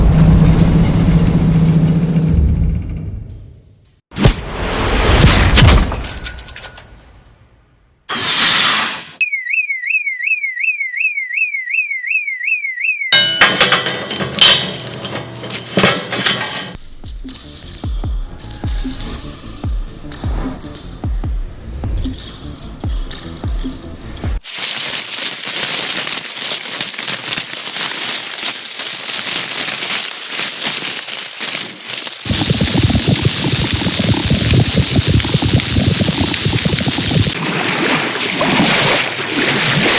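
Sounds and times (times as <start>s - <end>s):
electronic alarm tone warbling: 9.2s - 13.4s
dense crackling of small pops: 25.1s - 37.4s
noisy clicking sound effect: 32.3s - 37.4s.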